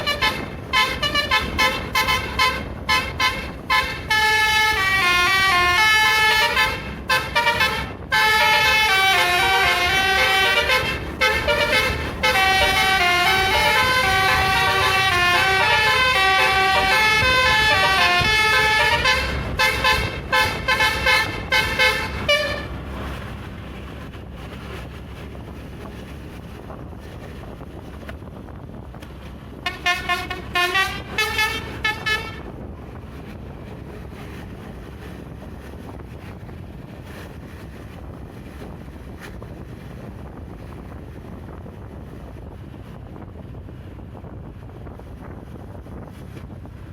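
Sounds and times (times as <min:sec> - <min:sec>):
multi-tone musical air horn: 0:00.0 - 0:22.8, 0:29.6 - 0:32.5
road and engine noise: 0:00.0 - 0:46.9.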